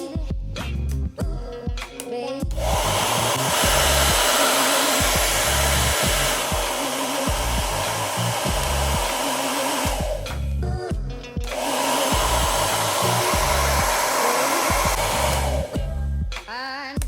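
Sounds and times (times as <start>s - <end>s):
background music with a beat: 0.0s - 17.0s
hair dryer blowing: 2.5s - 10.4s, 11.5s - 15.8s.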